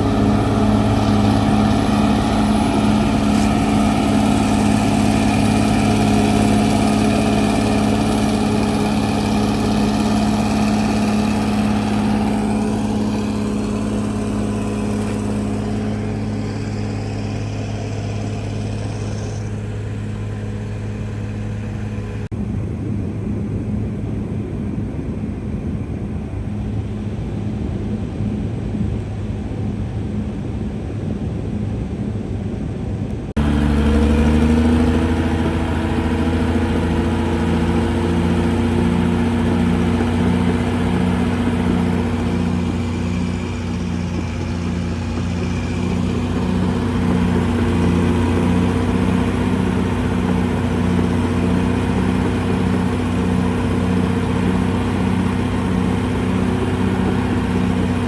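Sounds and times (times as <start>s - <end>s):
bulldozer diesel engine running: 0.0s - 22.3s, 33.3s - 58.0s.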